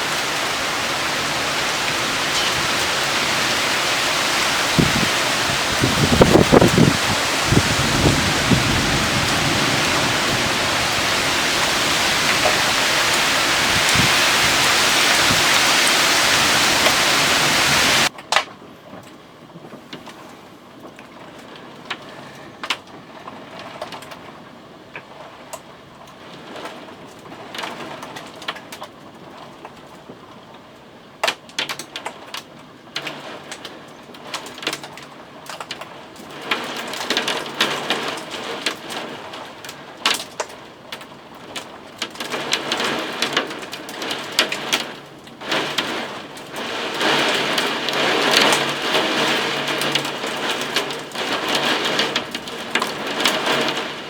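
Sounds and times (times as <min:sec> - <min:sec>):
heavy downpour rushing: 0:00.0 - 0:18.1, 0:35.6 - 0:54.0
rain drops tapping: 0:00.0 - 0:19.2, 0:25.0 - 0:54.0.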